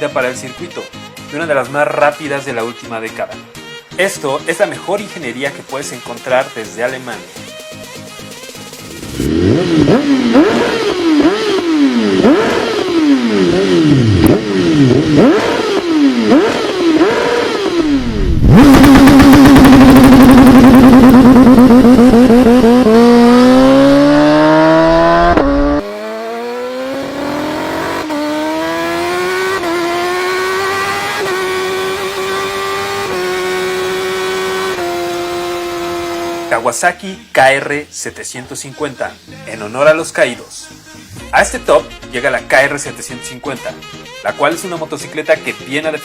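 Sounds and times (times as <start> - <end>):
motorcycle engine revving: 8.6 - 36.7.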